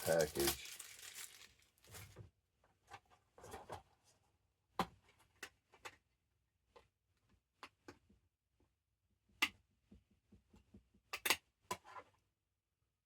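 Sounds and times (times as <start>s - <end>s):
soft rustling: 0.0s - 2.2s.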